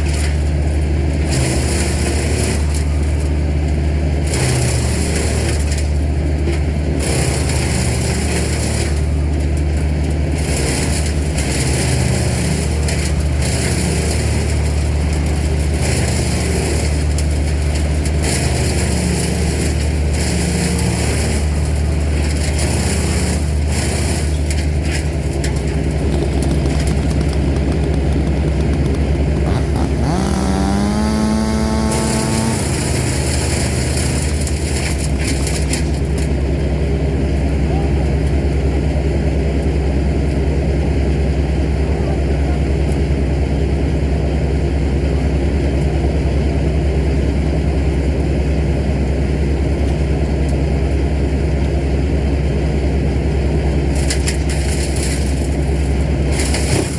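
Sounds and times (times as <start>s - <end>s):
large machine engine running: 20.7s - 35.7s
higher-pitched engine revving: 25.9s - 34.6s.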